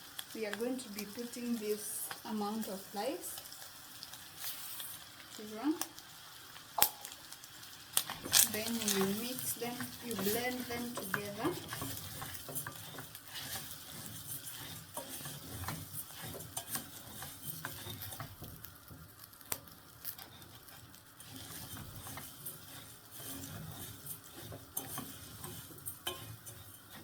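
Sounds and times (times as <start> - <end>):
light sizzling: 0.0 - 27.0
spoon scraping a pot: 8.1 - 19.1, 20.0 - 27.0.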